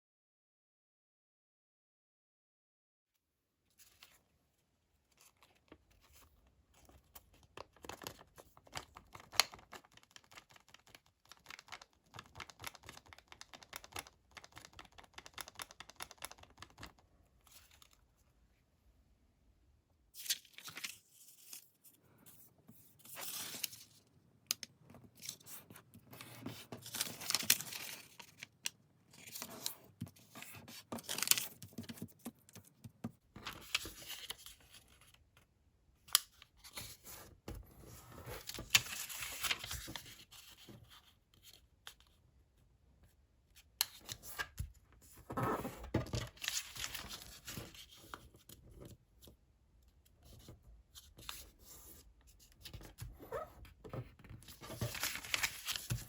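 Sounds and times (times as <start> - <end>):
paper rustling and crinkling: 20.2 - 24.0, 24.6 - 32.8, 33.4 - 35.0, 38.1 - 41.6, 43.9 - 48.5, 52.6 - 56.0
paper fold clicks: 46.4 - 47.9.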